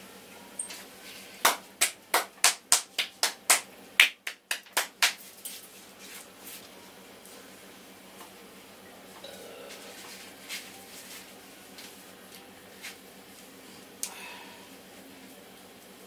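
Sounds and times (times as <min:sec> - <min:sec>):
hands slapping head: 0:01.4 - 0:05.2.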